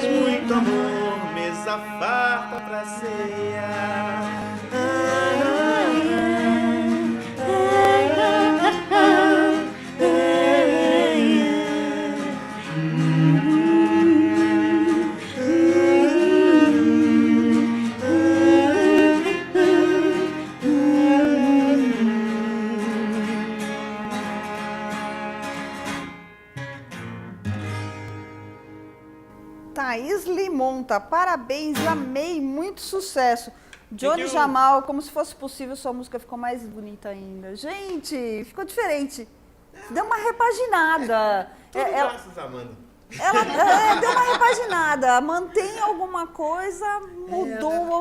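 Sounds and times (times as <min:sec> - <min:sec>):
acoustic folk music: 0:00.0 - 0:30.4, 0:31.6 - 0:32.5, 0:43.1 - 0:48.0.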